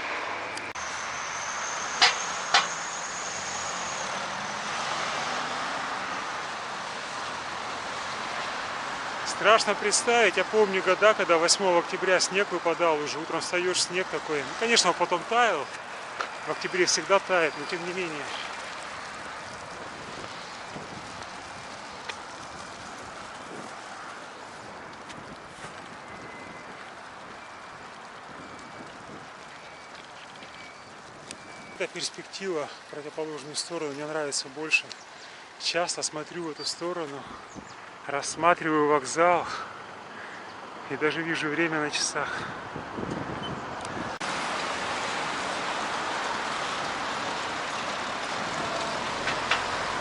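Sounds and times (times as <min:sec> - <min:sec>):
road traffic: 0:00.0 - 0:50.0
wind: 0:00.0 - 0:50.0
wind noise: 0:18.7 - 0:31.8, 0:42.2 - 0:45.6.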